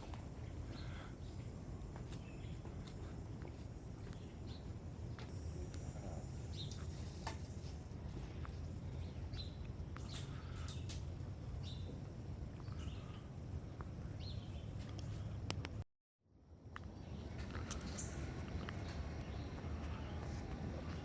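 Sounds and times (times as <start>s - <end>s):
low background rumble: 0.0s - 15.8s
small birds chirping: 0.2s - 15.4s, 16.8s - 21.0s.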